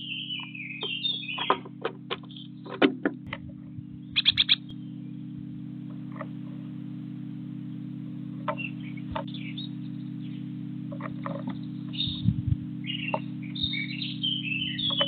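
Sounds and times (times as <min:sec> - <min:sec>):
small bird chirping: 0:00.0 - 0:02.7, 0:03.6 - 0:06.4, 0:08.4 - 0:15.0
steady low hum: 0:00.0 - 0:15.0.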